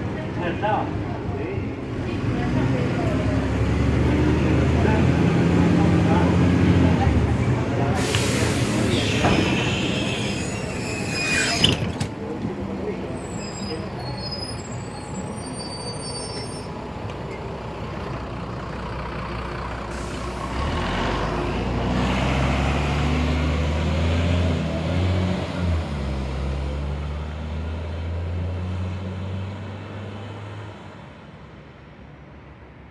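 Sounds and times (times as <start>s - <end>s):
bus diesel engine running: 0.0s - 29.0s
air brakes hissing: 7.9s - 12.1s, 19.9s - 20.6s.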